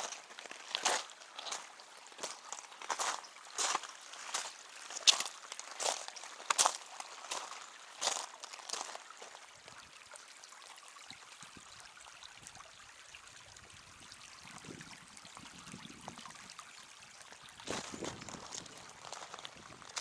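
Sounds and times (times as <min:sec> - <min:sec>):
footsteps crunching: 0:00.0 - 0:09.0, 0:17.7 - 0:20.0
creek water trickling: 0:00.0 - 0:20.0.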